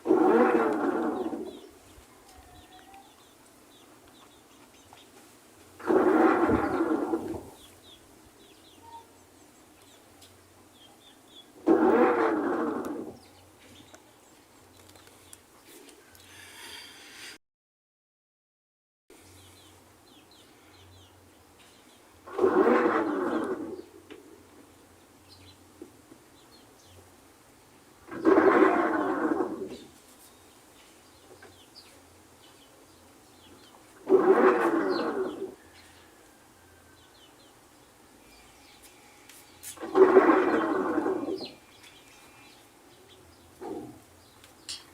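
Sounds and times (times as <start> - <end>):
washing machine motor bursts: 0.0 - 1.7, 5.8 - 7.6, 11.6 - 13.2, 22.3 - 23.9, 28.0 - 29.8, 38.5 - 41.8
faint bird chirps: 7.6 - 9.2
washing machine motor whine: 11.7 - 13.2.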